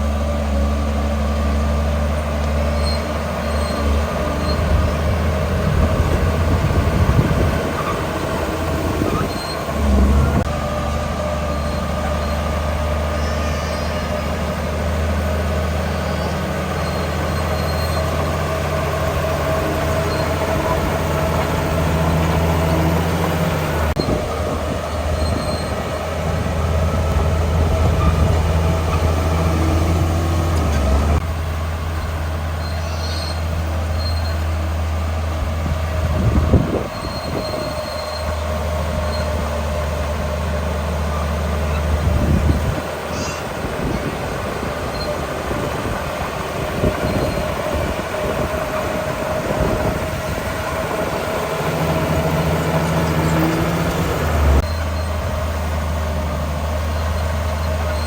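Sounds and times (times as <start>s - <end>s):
bulldozer diesel engine working: 0.0s - 58.0s
metallic squeal of steel tracks: 2.2s - 5.8s, 7.7s - 10.5s, 11.4s - 24.3s, 24.9s - 26.0s, 26.8s - 31.2s, 32.6s - 34.6s, 36.6s - 40.0s, 44.8s - 45.4s, 46.8s - 55.4s, 56.2s - 58.0s.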